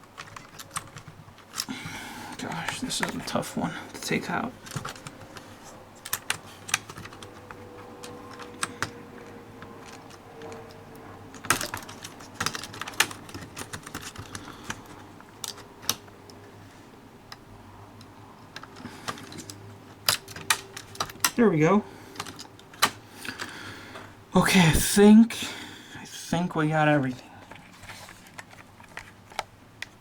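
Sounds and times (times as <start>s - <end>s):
small clicks and taps prying: 4.6s - 16.4s, 17.3s - 21.4s, 22.1s - 23.5s.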